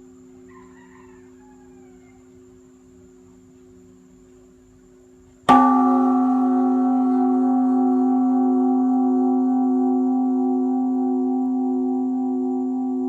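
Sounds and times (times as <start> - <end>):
large temple bell ringing: 5.5 - 13.0.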